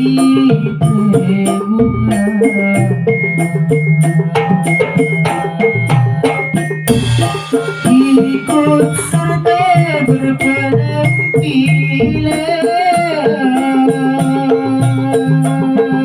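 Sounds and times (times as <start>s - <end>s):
fast pitched percussion: 0.0s - 16.0s
wavering melody line: 0.0s - 16.0s
cymbal crash: 6.9s - 9.6s.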